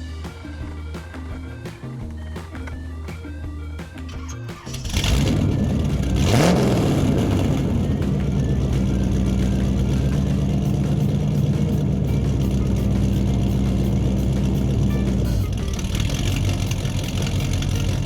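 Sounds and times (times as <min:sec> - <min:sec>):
car engine running: 0:00.0 - 0:18.0
car engine whooshes: 0:04.2 - 0:18.0.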